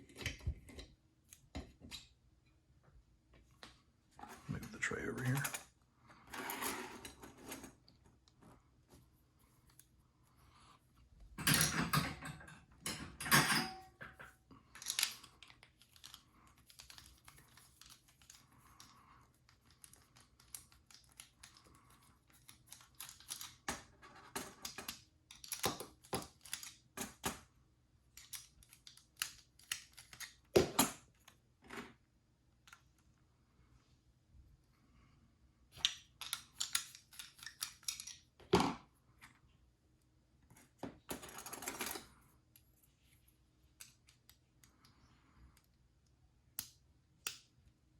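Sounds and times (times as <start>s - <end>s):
padlock parts clicking: 28.1s - 30.6s, 35.8s - 38.2s.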